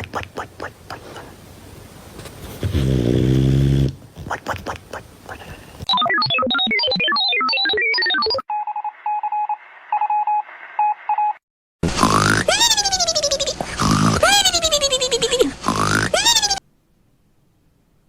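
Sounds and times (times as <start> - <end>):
dog snoring: 2.6 - 4.0
electronic beeping notes: 5.9 - 11.3.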